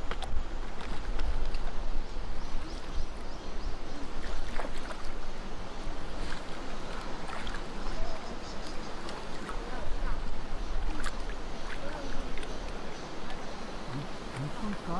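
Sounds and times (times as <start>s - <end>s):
stream rushing over rocks: 0.0s - 14.9s
water splashes: 0.0s - 14.9s.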